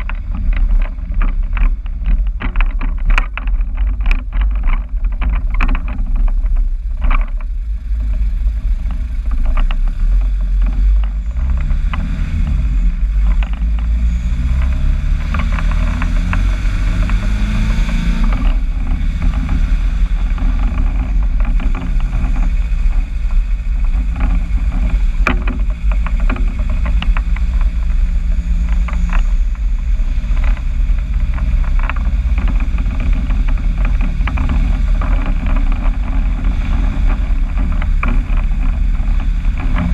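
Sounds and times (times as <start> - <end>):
engine revving through exhaust: 6.8 - 39.9.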